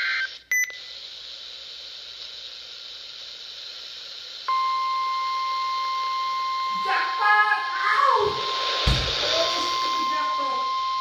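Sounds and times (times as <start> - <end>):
radio hiss: 0.0 - 11.0
alert data tones: 4.5 - 11.0
steady warning alarm tone: 4.5 - 11.0.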